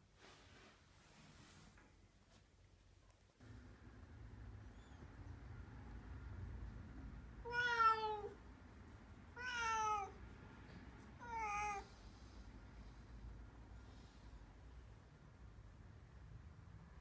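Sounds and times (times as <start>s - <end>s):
kitten meowing: 7.5s - 8.4s, 9.4s - 10.2s, 11.2s - 11.9s.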